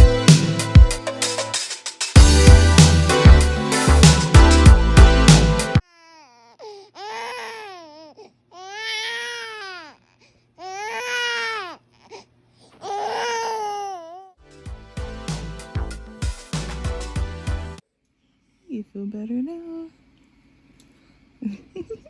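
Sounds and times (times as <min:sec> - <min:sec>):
baby crying: 0:05.8 - 0:14.4.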